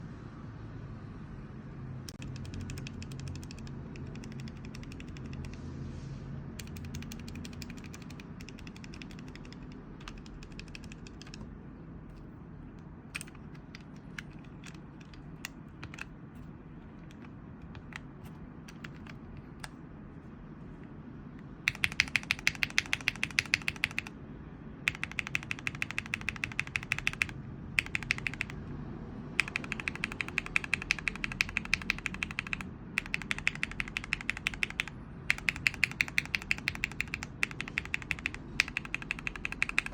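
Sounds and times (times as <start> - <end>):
mechanical keyboard typing: 2.1 - 5.6, 6.6 - 11.5, 13.1 - 19.8, 21.6 - 24.1, 24.9 - 28.6, 29.4 - 39.9.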